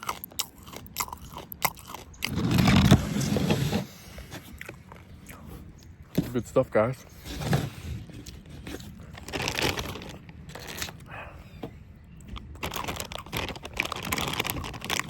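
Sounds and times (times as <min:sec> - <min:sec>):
plastic packaging crinkling: 0:08.1 - 0:11.0, 0:12.4 - 0:15.0.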